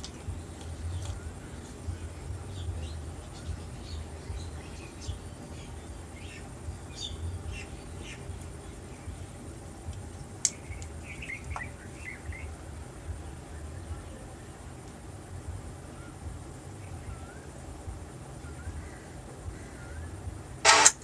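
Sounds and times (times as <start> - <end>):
faint bird chirps: 15.8 - 20.8
sharp click: 20.6 - 21.0.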